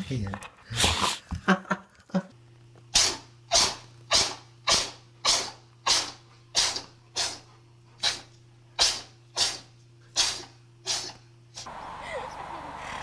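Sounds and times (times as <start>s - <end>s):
animal sneezing: 2.9s - 13.0s.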